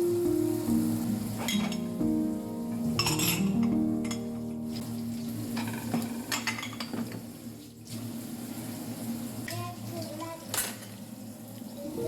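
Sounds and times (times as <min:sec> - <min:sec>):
cookware clinking and scraping: 0:01.4 - 0:01.9, 0:03.0 - 0:04.3, 0:05.6 - 0:07.3.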